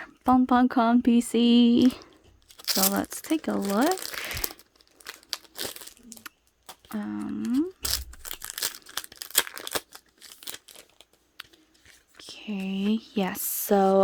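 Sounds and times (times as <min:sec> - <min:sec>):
packaging crinkling and tearing: 0:01.8 - 0:12.2.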